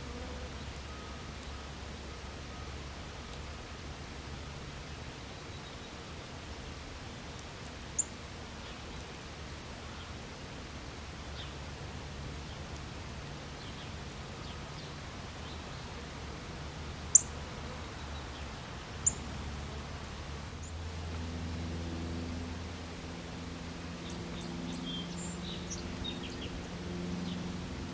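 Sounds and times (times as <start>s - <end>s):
birds chirping: 17.1s - 19.8s, 23.9s - 27.6s.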